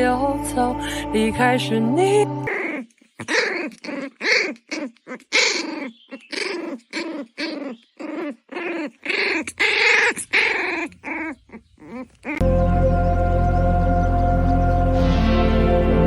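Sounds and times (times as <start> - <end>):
puppy whining and yelping: 2.5 - 12.4.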